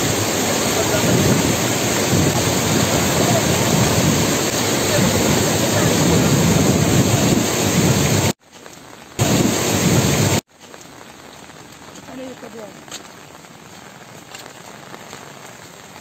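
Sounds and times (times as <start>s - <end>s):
water rushing: 0.0s - 8.4s, 9.2s - 10.4s.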